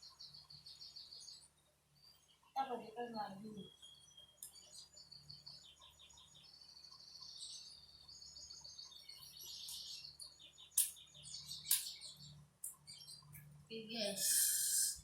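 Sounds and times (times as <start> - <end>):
birds chirping and trilling: 0.0 - 15.0
sharp clicks: 10.7 - 11.0, 11.6 - 13.5.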